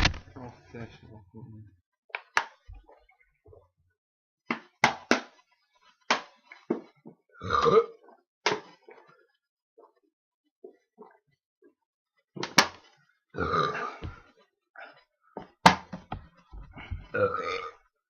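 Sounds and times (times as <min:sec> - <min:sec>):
person belching: 0:07.4 - 0:08.0, 0:13.4 - 0:14.1, 0:17.1 - 0:17.8.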